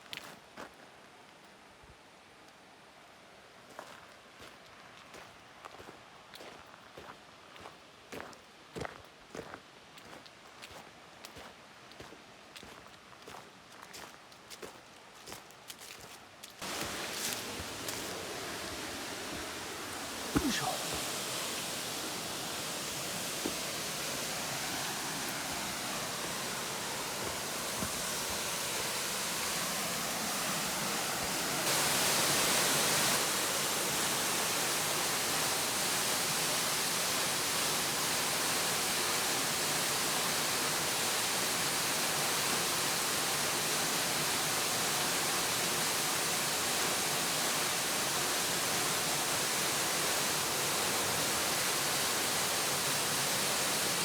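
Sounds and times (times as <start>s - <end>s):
river water rushing: 16.6s - 40.0s, 43.6s - 54.0s.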